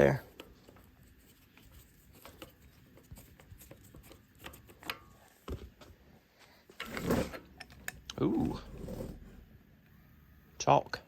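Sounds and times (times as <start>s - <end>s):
rubbing scrape: 6.8s - 7.4s, 8.4s - 9.5s.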